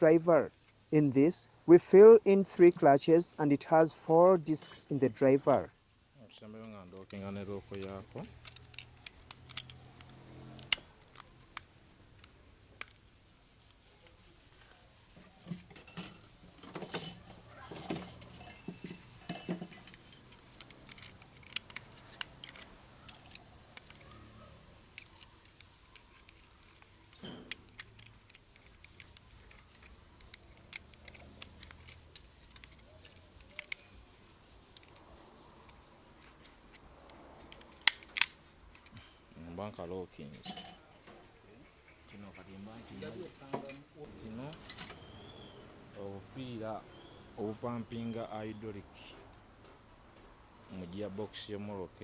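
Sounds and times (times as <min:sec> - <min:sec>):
small metal parts clinking: 0:07.1 - 0:14.2, 0:15.2 - 0:34.1, 0:40.3 - 0:41.0.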